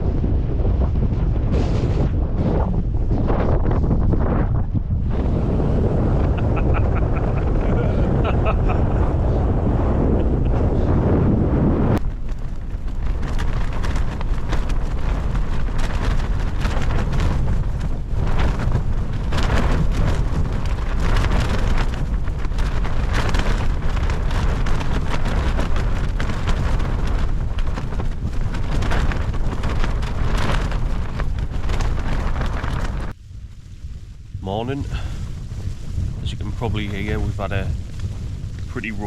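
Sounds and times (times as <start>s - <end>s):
wind gusting: 0.0s - 39.0s
rain spattering on tent: 12.0s - 39.0s.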